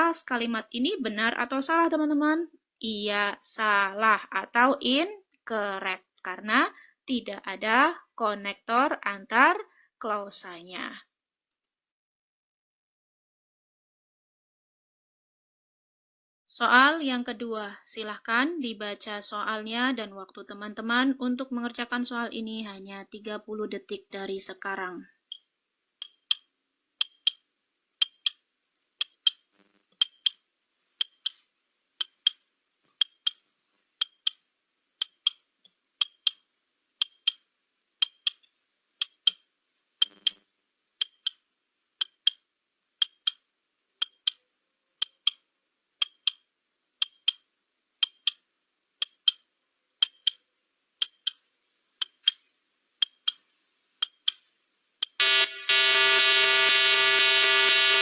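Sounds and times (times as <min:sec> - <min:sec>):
clock ticking: 0:25.3 - 0:27.4, 0:28.0 - 0:30.4, 0:31.0 - 0:31.4, 0:32.0 - 0:32.4, 0:33.0 - 0:33.4, 0:34.0 - 0:34.4, 0:35.0 - 0:35.4, 0:36.0 - 0:36.4, 0:37.0 - 0:37.4, 0:38.0 - 0:39.4, 0:40.0 - 0:40.4, 0:41.0 - 0:41.4, 0:42.0 - 0:42.4, 0:43.0 - 0:43.4, 0:44.0 - 0:44.4, 0:45.0 - 0:45.4, 0:46.0 - 0:48.4, 0:49.0 - 0:49.4, 0:50.0 - 0:50.4, 0:51.0 - 0:55.2.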